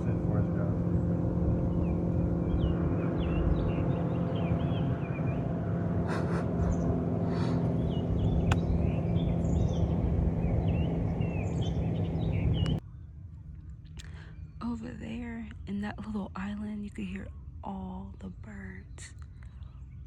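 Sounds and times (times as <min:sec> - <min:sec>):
small birds chirping: 0:00.0 - 0:13.1
low motor hum: 0:00.0 - 0:20.0.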